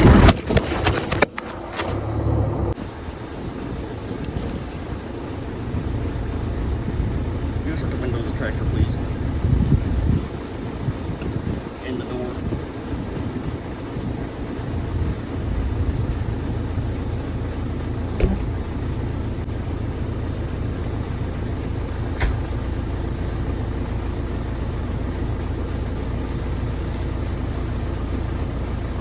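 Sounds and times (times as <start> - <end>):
tractor engine idling: 0.0 - 29.0.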